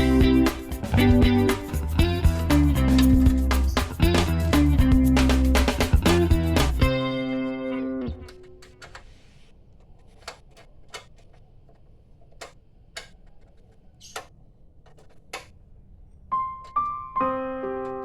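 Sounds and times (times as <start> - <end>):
electric piano notes: 16.3 - 18.0.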